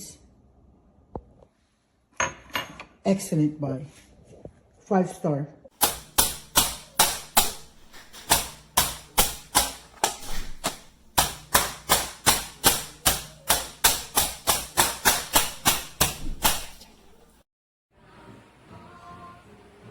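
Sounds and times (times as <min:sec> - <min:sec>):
mallet pounding meat: 0:05.8 - 0:17.4.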